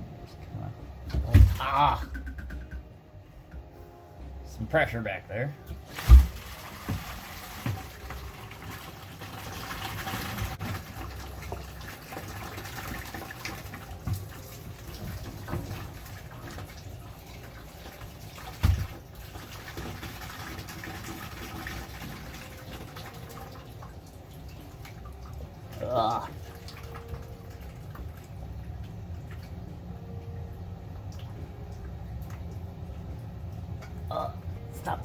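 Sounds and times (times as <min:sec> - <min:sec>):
water splashing into bucket: 0:05.8 - 0:28.2.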